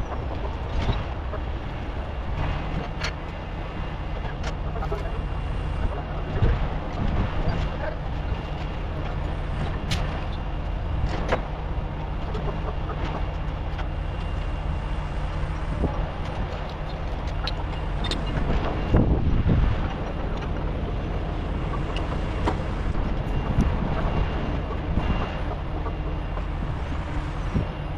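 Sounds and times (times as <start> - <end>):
diesel truck engine running: 0.0 - 27.9.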